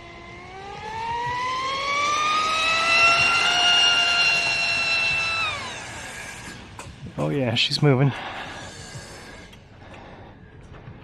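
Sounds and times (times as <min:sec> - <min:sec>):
high-pitched electric motor whine: 0:00.0 - 0:07.2, 0:08.2 - 0:09.7.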